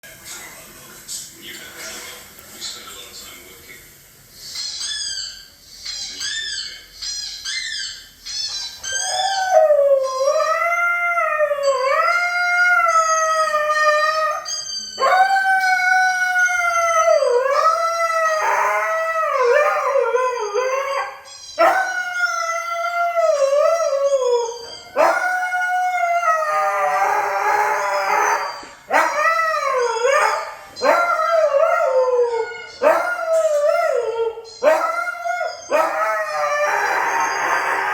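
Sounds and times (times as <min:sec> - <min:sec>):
husky howling and whining: 0:08.8 - 0:37.9.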